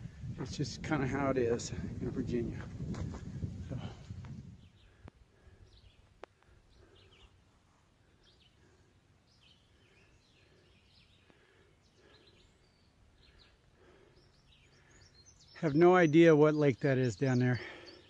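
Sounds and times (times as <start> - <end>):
faint bird chirps: 8.1 - 18.0.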